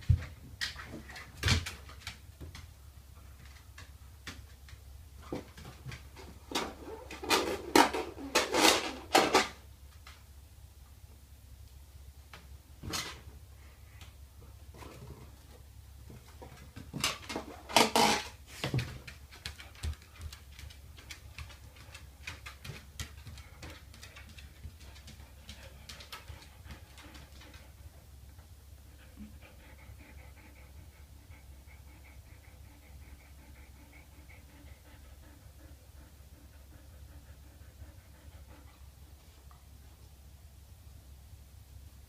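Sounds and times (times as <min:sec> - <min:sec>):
dog panting: 0:18.7 - 0:28.0, 0:28.8 - 0:39.7.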